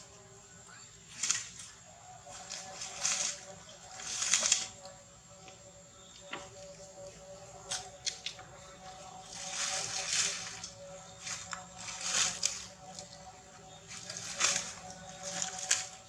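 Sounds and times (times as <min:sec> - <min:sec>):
bursts of rustling: 0:13.8 - 0:16.0.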